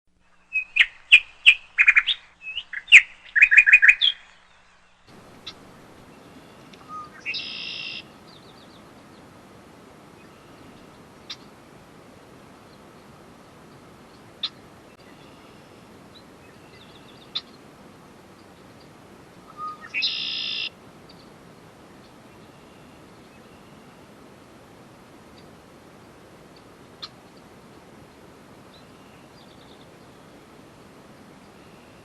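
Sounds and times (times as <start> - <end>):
small birds chirping: 0.2 - 9.3, 12.6 - 17.7, 18.3 - 21.3, 28.7 - 30.4
short buzzy bird call: 6.4 - 8.1.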